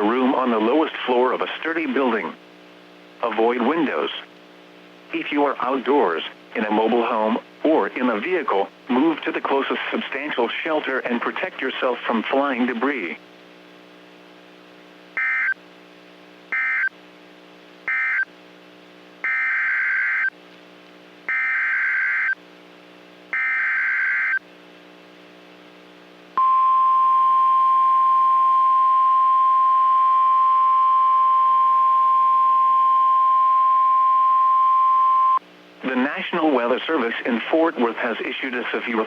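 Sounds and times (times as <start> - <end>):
steady alarm tone: 15.2 - 15.6, 16.5 - 16.9, 17.9 - 18.3, 19.2 - 20.3, 21.3 - 22.4, 23.4 - 24.4.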